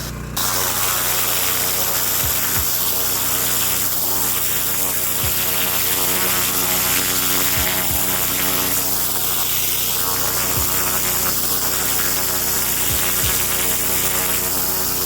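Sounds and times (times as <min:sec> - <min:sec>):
hiss of water spray: 0:00.0 - 0:15.0
pressure washer engine running: 0:00.0 - 0:15.0.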